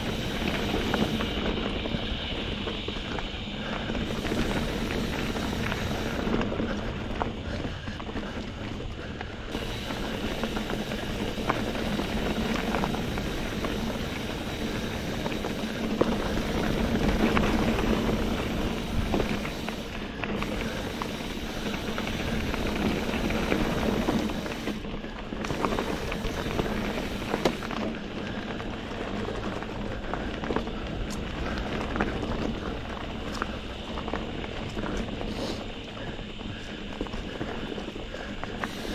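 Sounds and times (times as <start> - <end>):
tyres rolling over dirt trail: 0.0 - 38.9
bike clicks and knocks: 25.4 - 27.9.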